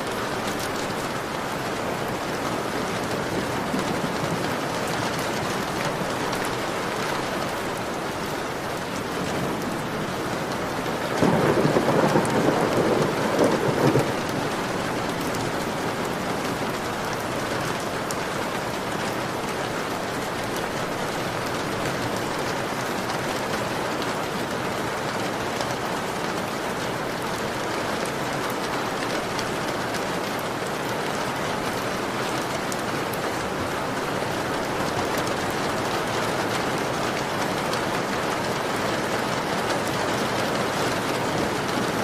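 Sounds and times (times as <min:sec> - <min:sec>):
rain pattering on window: 0:00.0 - 0:42.0
thunder rumble: 0:09.2 - 0:15.6.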